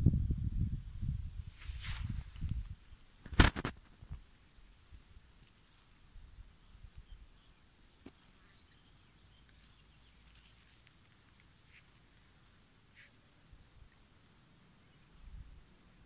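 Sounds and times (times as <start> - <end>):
faint bird chirps: 5.7 - 16.0.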